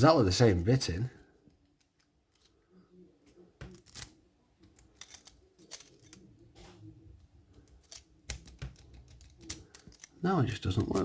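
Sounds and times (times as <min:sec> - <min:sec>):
keys clicking in padlock: 0:03.7 - 0:06.3, 0:07.6 - 0:11.0.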